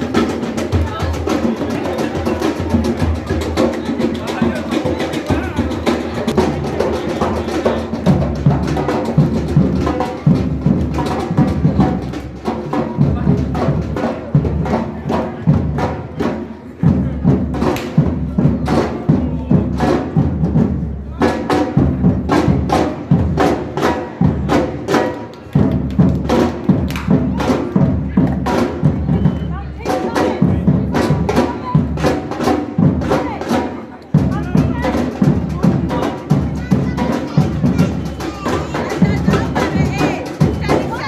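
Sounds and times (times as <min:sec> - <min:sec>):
group of drums playing: 0:00.0 - 0:41.0.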